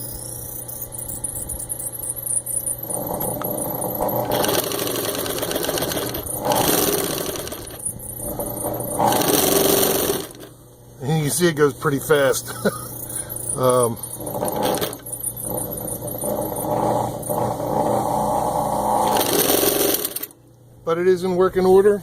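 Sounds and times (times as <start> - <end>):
low motor hum: 0.0 - 22.0
sewing machine stitching: 3.0 - 10.5, 14.2 - 18.3, 18.9 - 20.3.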